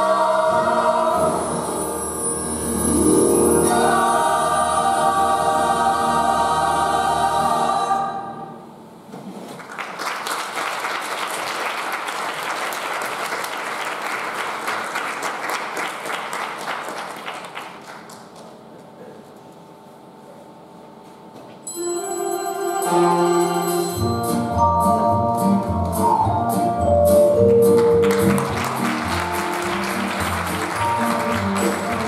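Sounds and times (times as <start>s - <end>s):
cast singing with accompaniment: 0.0s - 2.3s, 3.2s - 8.6s, 21.8s - 24.4s
audience applause: 9.6s - 18.6s, 27.8s - 32.0s.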